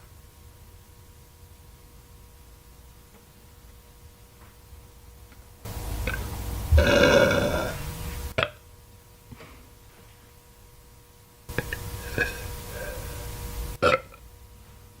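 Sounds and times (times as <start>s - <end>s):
woman burping: 6.8s - 7.8s, 8.4s - 8.6s, 11.5s - 13.1s, 13.8s - 14.2s.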